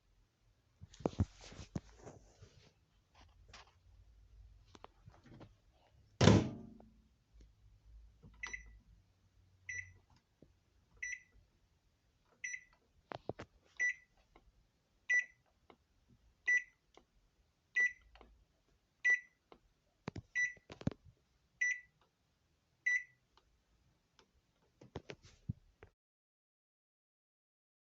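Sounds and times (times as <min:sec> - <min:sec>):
loud knock: 0:06.2 - 0:06.8
microwave oven beeps: 0:08.4 - 0:08.8, 0:09.7 - 0:10.0, 0:11.0 - 0:11.3, 0:12.4 - 0:12.7, 0:15.1 - 0:15.4, 0:16.5 - 0:16.8, 0:17.8 - 0:18.1, 0:19.1 - 0:19.4, 0:20.4 - 0:20.7, 0:21.6 - 0:21.9, 0:22.9 - 0:23.2.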